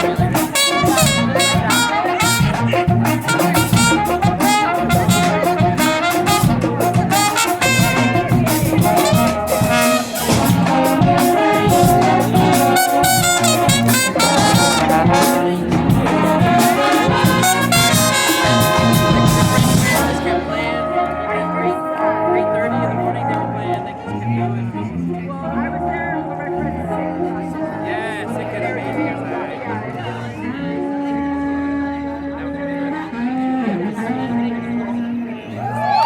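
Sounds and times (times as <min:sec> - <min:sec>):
steady drum beat: 0:00.0 - 0:20.7
trumpets and trombones: 0:00.0 - 0:35.2.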